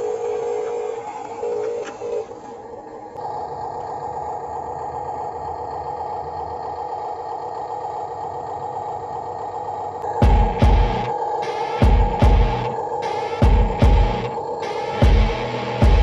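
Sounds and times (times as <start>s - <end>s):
remote-control vehicle idling hum: 0.0s - 11.2s.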